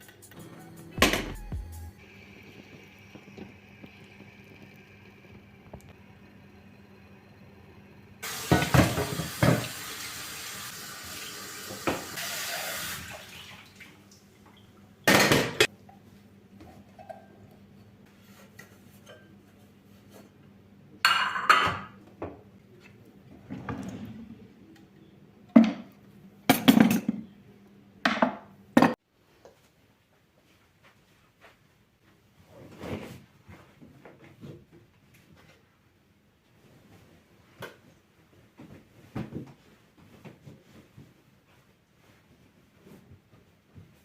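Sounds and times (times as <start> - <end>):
water running from tap: 8.2 - 14.7
dishes clattering and clinking: 15.1 - 15.7, 16.6 - 17.9, 18.5 - 19.6, 21.0 - 22.4, 26.5 - 27.3.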